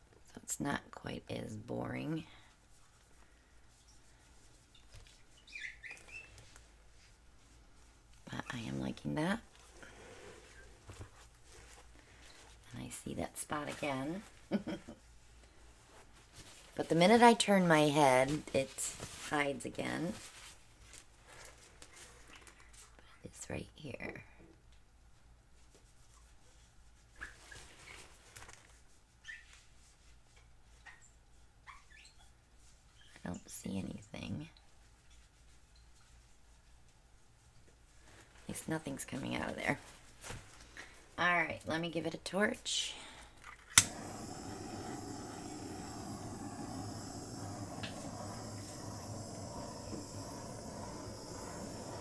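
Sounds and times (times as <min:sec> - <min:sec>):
torch igniter click: 0:43.7 - 0:52.0
torch flame hissing: 0:43.8 - 0:52.0.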